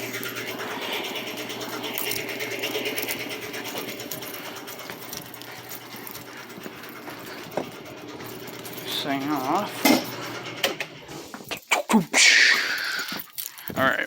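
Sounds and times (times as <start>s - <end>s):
air compressor running: 0.0s - 11.7s.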